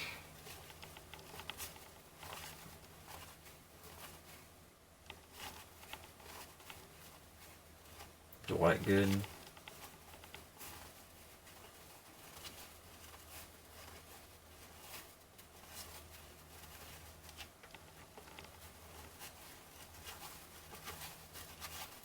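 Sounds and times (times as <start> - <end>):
low steady hum: 0.0 - 21.5.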